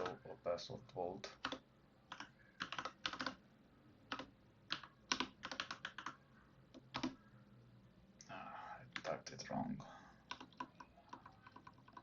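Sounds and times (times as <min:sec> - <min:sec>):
keyboard typing clicks: 0:01.4 - 0:03.4, 0:04.1 - 0:07.2, 0:10.2 - 0:12.0.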